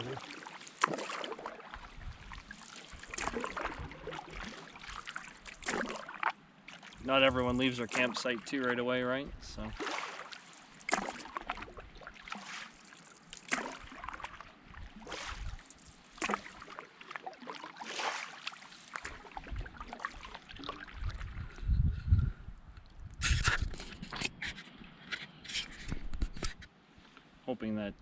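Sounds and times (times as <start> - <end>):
water washing along hull: 0.0 - 8.9, 9.6 - 21.3
canoe paddles splashing water: 0.0 - 9.0, 9.6 - 21.5.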